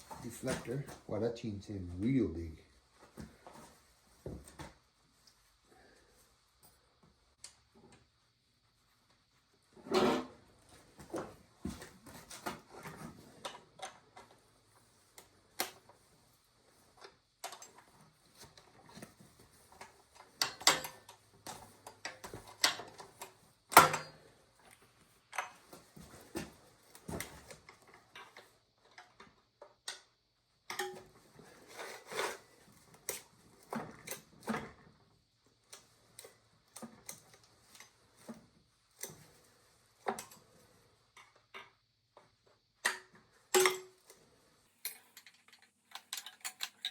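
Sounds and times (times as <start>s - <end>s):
metallic clicks and knocks on chainsaw chain: 44.8s - 46.9s.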